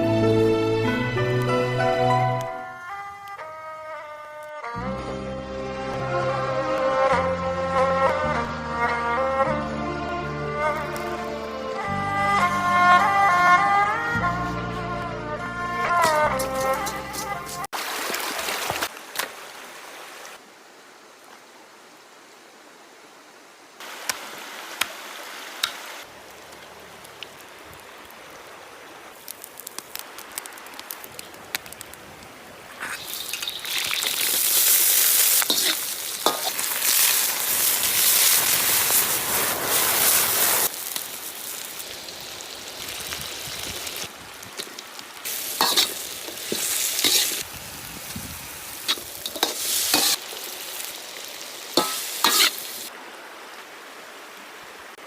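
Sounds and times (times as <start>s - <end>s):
food sizzling in hot oil: 16.2s - 17.7s, 32.8s - 52.9s.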